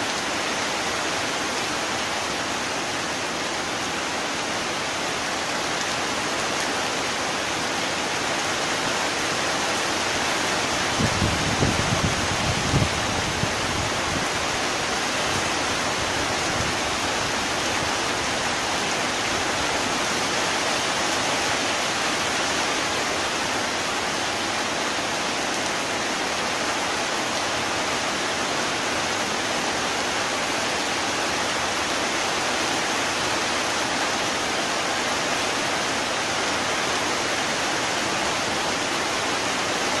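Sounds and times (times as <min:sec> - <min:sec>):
heavy rain falling: 0:00.0 - 0:40.0.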